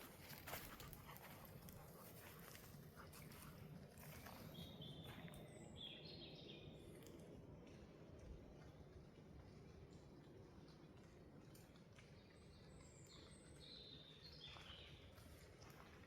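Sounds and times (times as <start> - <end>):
soft footsteps on forest floor: 0.0 - 5.6.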